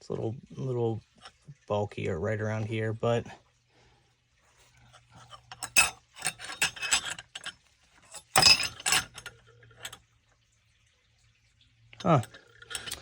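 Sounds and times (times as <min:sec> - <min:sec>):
metal parts clicking and clinking: 0:04.9 - 0:10.0, 0:12.0 - 0:13.0.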